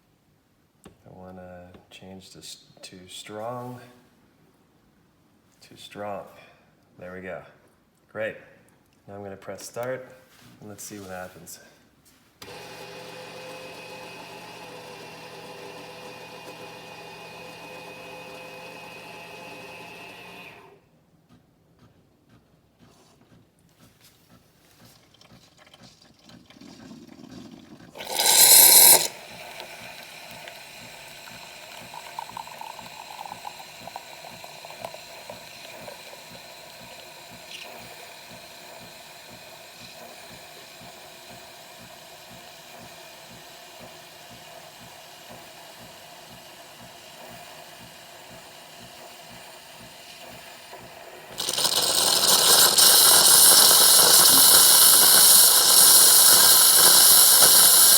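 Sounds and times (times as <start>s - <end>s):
coffee machine hiss: 12.4s - 20.8s, 25.8s - 57.9s
coffee machine humming: 12.4s - 20.8s, 24.8s - 57.9s
steam hissing: 26.7s - 57.9s.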